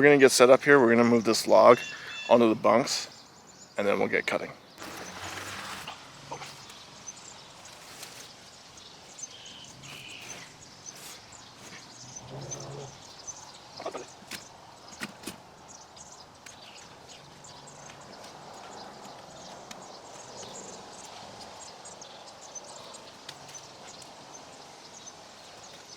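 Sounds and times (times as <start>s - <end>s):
faint high chirps: 1.6s - 2.6s.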